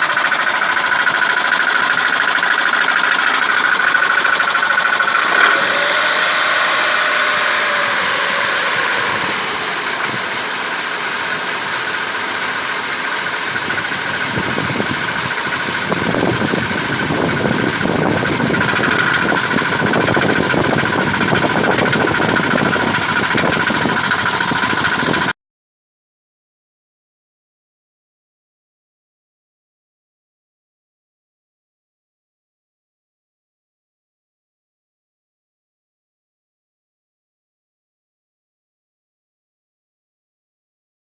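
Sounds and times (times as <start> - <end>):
car engine running: 0.0 - 25.3
engine knocking: 0.0 - 25.4.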